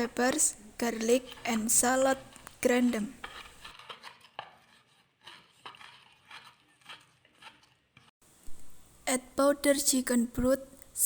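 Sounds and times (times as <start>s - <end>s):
pestle knocking and scraping: 0.3s - 8.1s.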